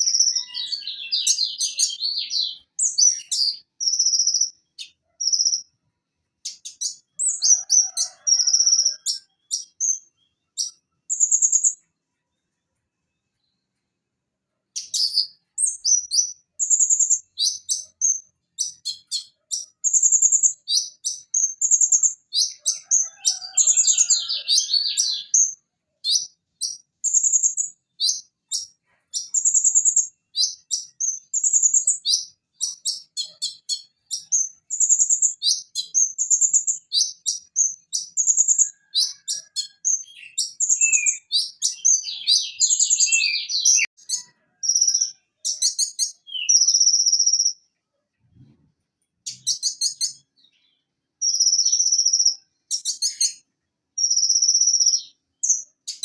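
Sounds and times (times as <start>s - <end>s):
sunbird singing: 0.0s - 5.7s, 6.4s - 11.8s, 14.8s - 47.6s, 54.0s - 56.0s.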